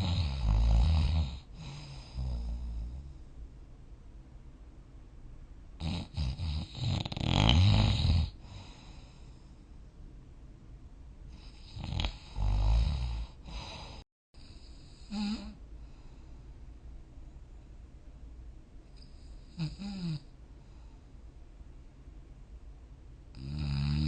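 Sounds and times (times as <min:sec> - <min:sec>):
person snoring: 0:00.0 - 0:03.2, 0:05.8 - 0:09.4, 0:11.4 - 0:15.6, 0:19.5 - 0:20.3, 0:23.4 - 0:24.0.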